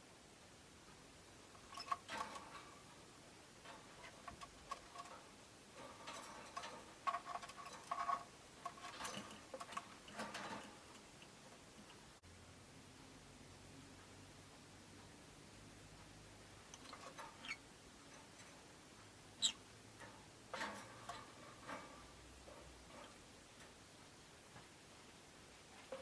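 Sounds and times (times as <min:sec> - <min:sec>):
birds clicking and tapping in cage: 0:01.4 - 0:12.2, 0:16.4 - 0:24.8, 0:25.8 - 0:26.0.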